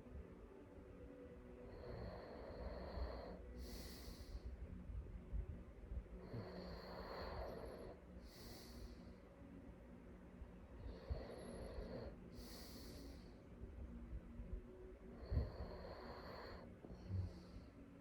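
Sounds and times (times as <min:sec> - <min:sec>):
hissing breath: 0:03.3 - 0:04.5, 0:12.3 - 0:13.4.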